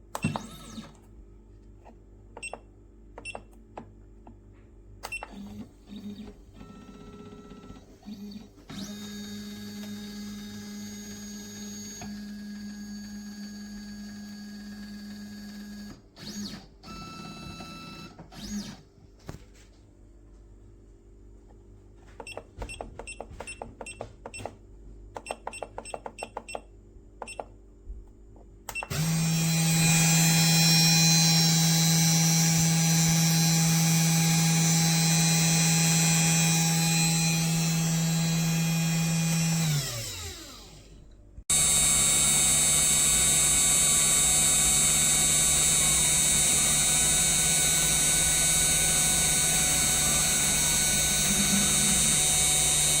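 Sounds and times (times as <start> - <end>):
spindle motor whine: 5.3 - 18.8, 28.9 - 53.0.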